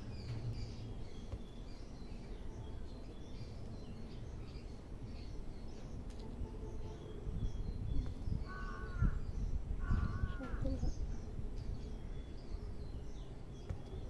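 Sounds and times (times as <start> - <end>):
bird calls: 6.7 - 14.0.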